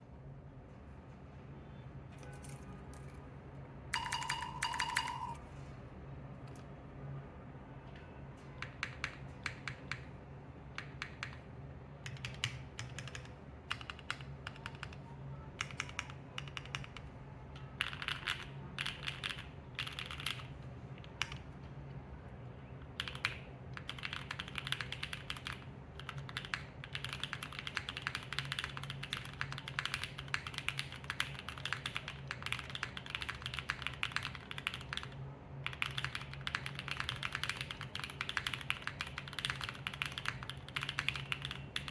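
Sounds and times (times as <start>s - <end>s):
mechanical keyboard typing: 4.0s - 5.4s, 8.6s - 10.1s, 10.7s - 11.4s, 12.0s - 21.5s, 22.8s - 41.9s.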